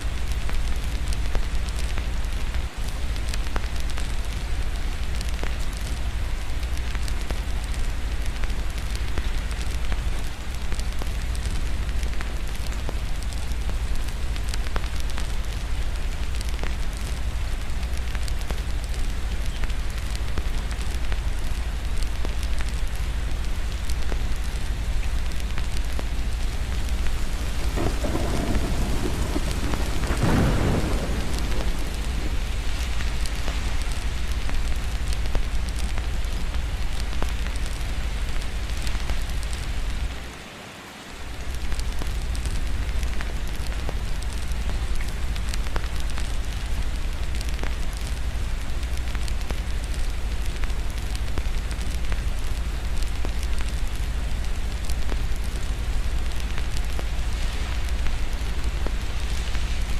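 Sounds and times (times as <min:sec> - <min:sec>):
heavy rain: 0:00.0 - 0:59.9
thunder rumbling: 0:25.4 - 0:36.4.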